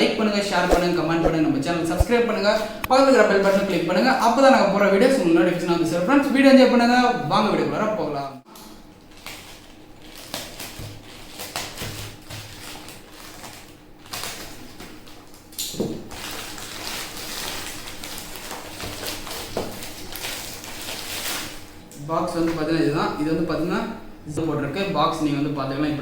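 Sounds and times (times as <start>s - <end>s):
packaging rustling and scraping: 9.1s - 15.4s, 16.1s - 21.8s.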